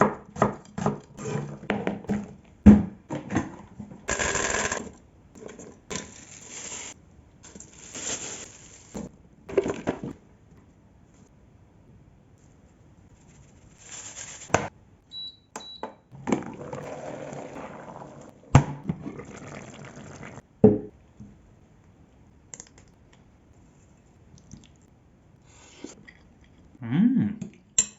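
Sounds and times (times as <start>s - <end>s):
stewed vegetables pouring: 5.9s - 9.1s, 13.4s - 14.6s.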